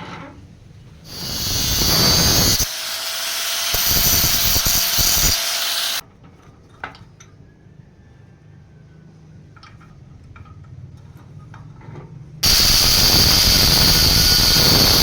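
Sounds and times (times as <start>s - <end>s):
power tool whining: 1.1s - 6.0s, 12.4s - 15.0s.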